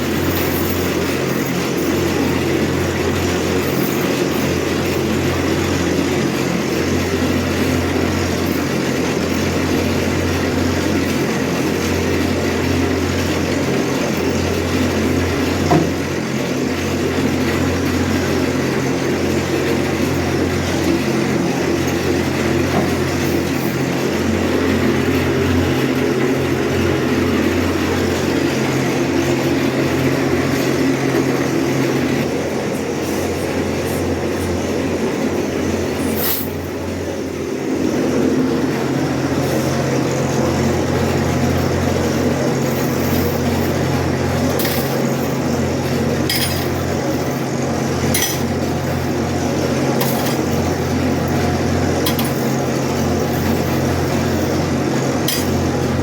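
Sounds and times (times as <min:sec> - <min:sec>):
machine motor humming: 0:00.0 - 0:56.0
sharp metallic clinks: 0:46.3 - 0:47.3, 0:48.1 - 0:48.6.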